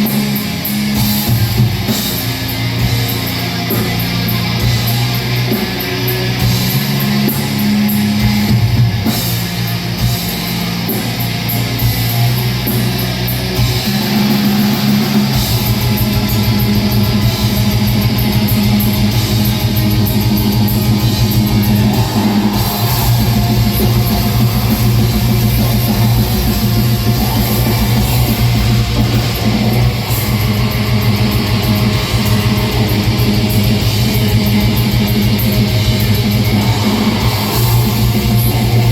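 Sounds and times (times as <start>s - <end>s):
distorted electric guitars: 0.0s - 38.9s
drums and cymbals: 0.0s - 38.9s
rapid kick drum strokes: 13.6s - 38.9s.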